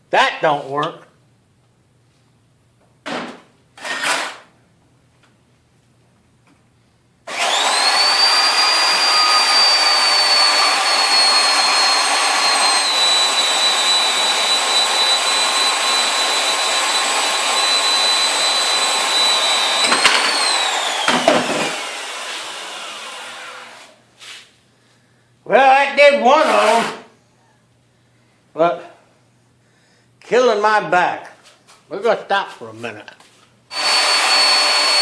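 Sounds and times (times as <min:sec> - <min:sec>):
power tool cutting steel: 0:07.3 - 0:24.0, 0:26.3 - 0:27.0, 0:33.7 - 0:35.0.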